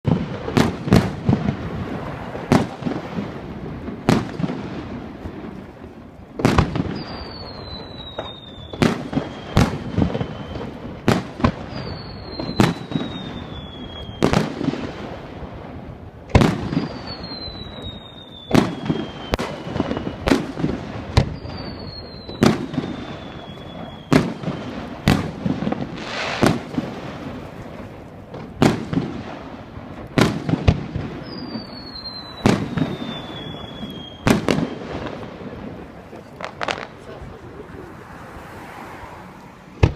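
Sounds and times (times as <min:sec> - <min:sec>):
falling firework whistle: 0:06.4 - 0:15.4, 0:16.4 - 0:27.1, 0:30.2 - 0:35.2.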